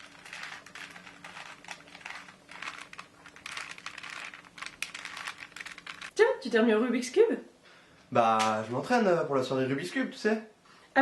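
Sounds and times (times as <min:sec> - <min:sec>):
puzzle cube layers clicking: 0:01.3 - 0:06.1.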